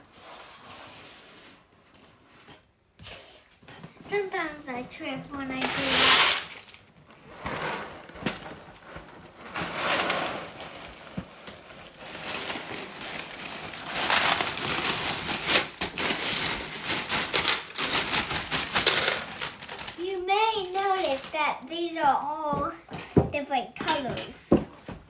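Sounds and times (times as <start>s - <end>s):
cereal pouring into a pan: 5.6s - 6.8s, 9.5s - 20.0s.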